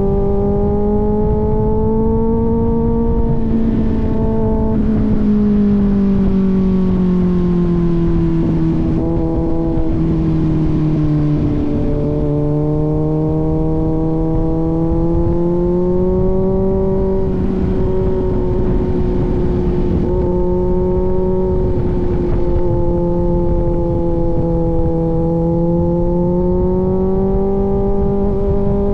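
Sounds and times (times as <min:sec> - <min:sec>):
motorcycle engine running: 0:00.0 - 0:28.9.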